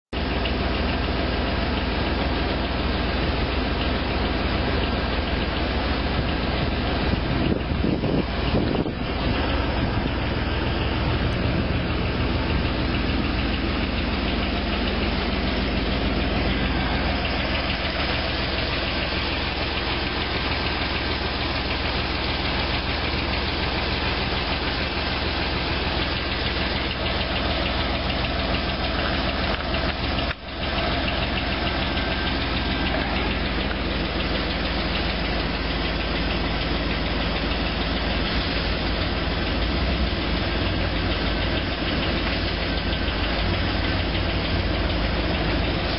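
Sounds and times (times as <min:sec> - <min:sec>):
car engine idling with knocking: 0:00.0 - 0:45.9.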